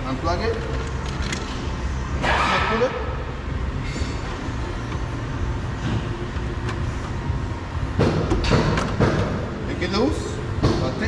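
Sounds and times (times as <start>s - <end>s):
low background rumble: 0.0s - 11.0s.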